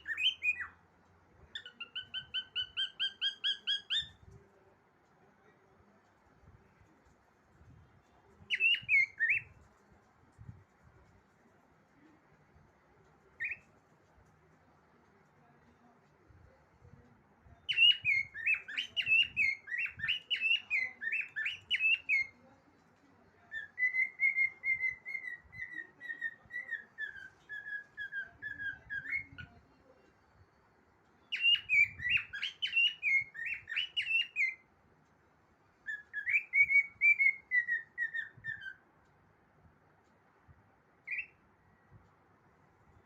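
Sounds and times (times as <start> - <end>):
cockatiel whistling: 0.0 - 0.8, 1.6 - 4.2, 8.5 - 9.5, 17.7 - 22.3, 23.5 - 29.6, 31.3 - 34.6, 35.8 - 38.8, 41.1 - 41.4.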